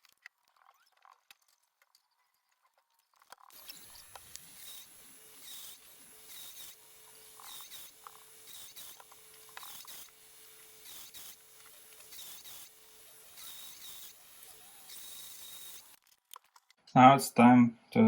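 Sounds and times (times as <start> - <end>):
hand tool scraping strokes: 3.5 - 16.0.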